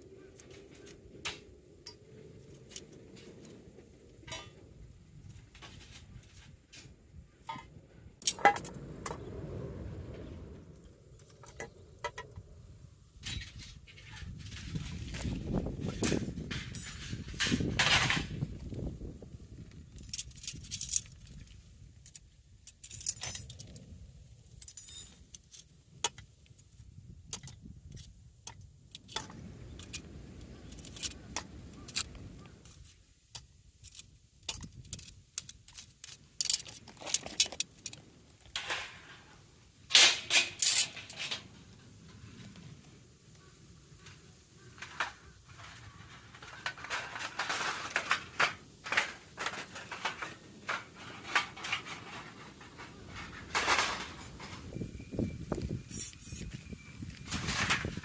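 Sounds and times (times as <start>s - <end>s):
small metal objects clinking: 13.2s - 18.4s, 19.8s - 23.8s, 24.5s - 26.2s, 39.9s - 41.6s, 44.7s - 58.0s.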